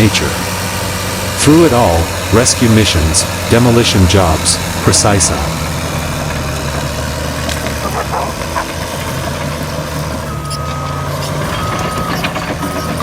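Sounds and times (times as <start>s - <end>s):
heavy machine engine running: 0.0s - 13.0s
high backup beep: 10.3s - 13.0s.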